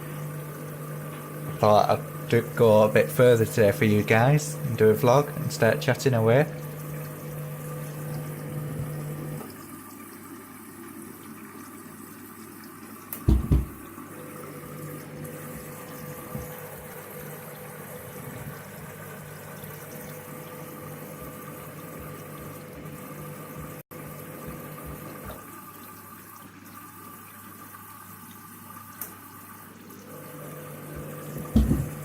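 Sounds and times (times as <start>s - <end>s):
water rushing into washing machine: 0.0s - 32.0s.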